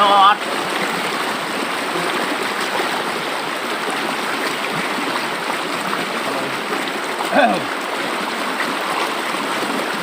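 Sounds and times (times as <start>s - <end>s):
river water flowing: 0.0s - 10.0s.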